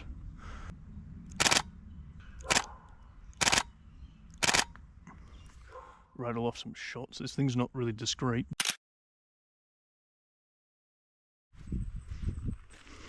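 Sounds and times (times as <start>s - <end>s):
camera shutter clacking: 1.3s - 1.7s, 2.4s - 2.7s, 3.4s - 3.7s, 4.3s - 4.8s.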